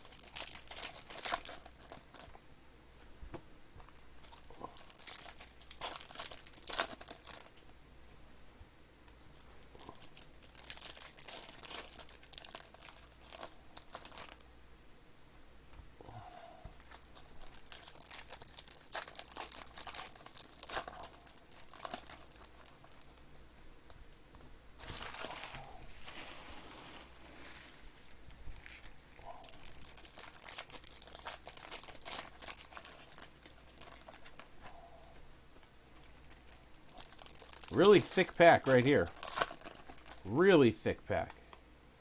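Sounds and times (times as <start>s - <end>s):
plastic wrapping crinkling and tearing: 0.0s - 2.3s, 4.2s - 7.7s, 9.4s - 14.4s, 16.8s - 23.2s, 24.8s - 34.6s, 36.3s - 40.3s.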